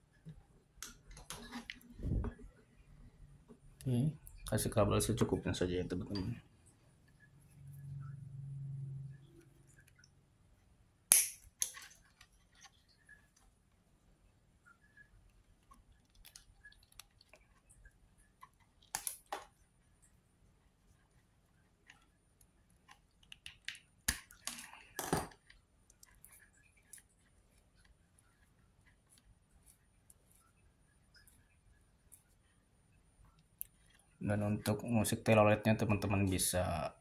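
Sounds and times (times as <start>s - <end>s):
clicks and taps of wire: 22.8s - 27.0s.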